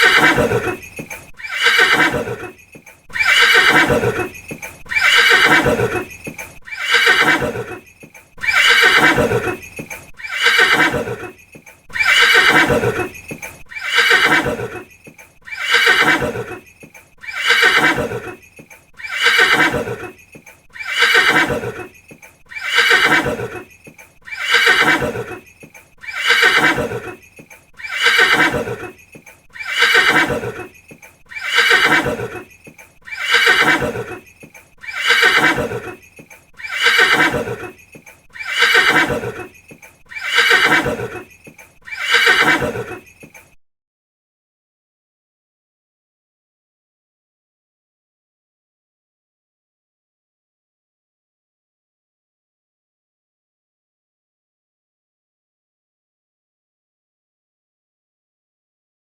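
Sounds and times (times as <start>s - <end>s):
horse whinnying: 0.0s - 43.3s.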